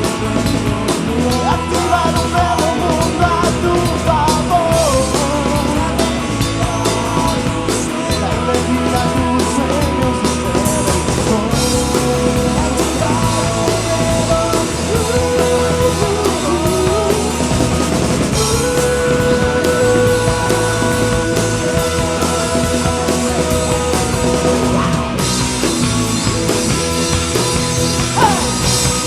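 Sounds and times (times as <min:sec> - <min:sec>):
drum kit: 0:00.0 - 0:29.0
rock band playing: 0:00.0 - 0:29.0.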